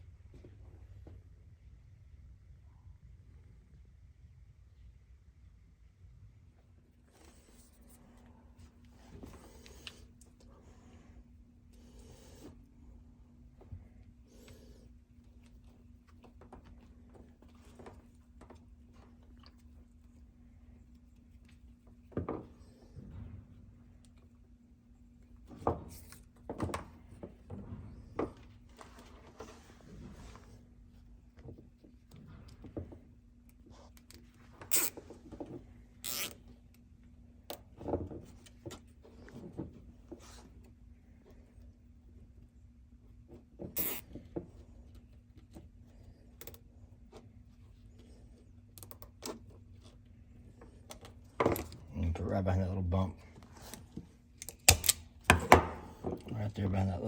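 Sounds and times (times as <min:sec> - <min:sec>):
faint steady hum: 0:00.0 - 0:57.0
tools knocking and clunking: 0:54.6 - 0:56.3.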